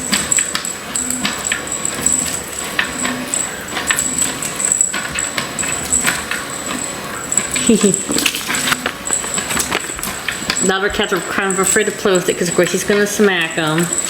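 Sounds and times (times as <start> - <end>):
steady high-pitched whine: 0.0 - 14.0.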